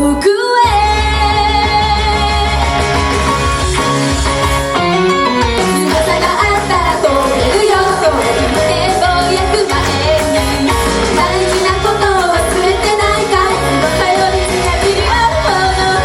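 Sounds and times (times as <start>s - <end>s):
live pop-rock band: 0.0s - 16.0s
lead vocal singing: 5.7s - 16.0s.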